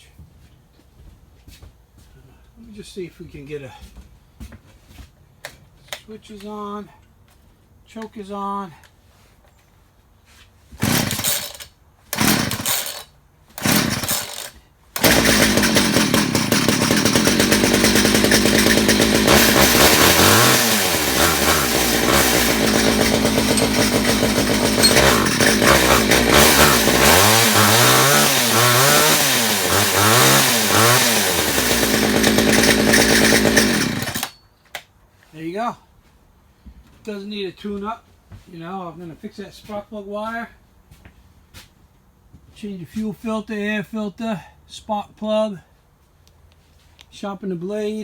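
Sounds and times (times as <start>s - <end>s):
chainsaw engine revving: 10.8s - 34.3s
chainsaw pull-start cranking: 10.8s - 34.4s.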